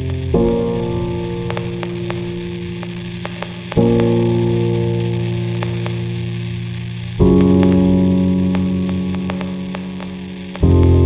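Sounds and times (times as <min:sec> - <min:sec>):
ambient drone music: 0:00.0 - 0:11.0
faint clicks: 0:01.4 - 0:04.2, 0:05.5 - 0:06.2, 0:07.2 - 0:10.7.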